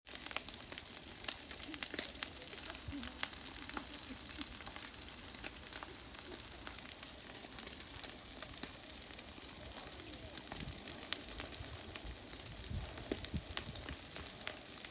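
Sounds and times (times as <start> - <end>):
fire crackles and pops: 0.1 - 14.9
hiss of flames: 0.2 - 14.9.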